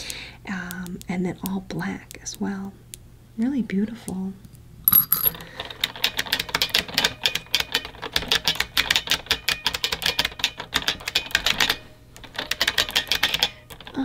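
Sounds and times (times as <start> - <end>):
fast typing on mechanical keyboard: 6.0 - 11.8, 12.4 - 14.0.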